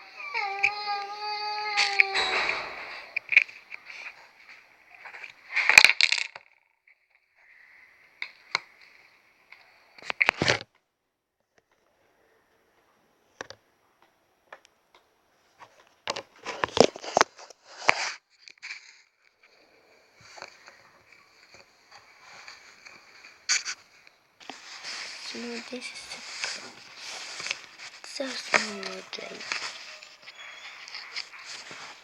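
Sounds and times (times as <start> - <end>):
plastic packaging crackling: 22.3 - 32.0.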